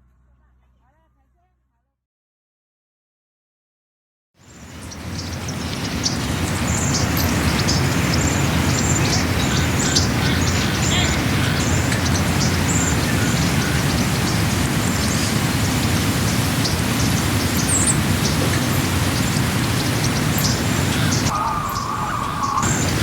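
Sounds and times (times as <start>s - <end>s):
drone rushing noise: 5.8s - 23.0s.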